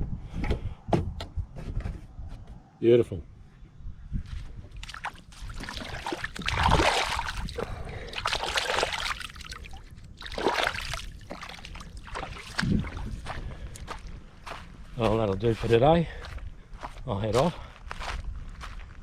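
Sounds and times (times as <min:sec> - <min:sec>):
water washing and splashing: 0:04.8 - 0:13.3.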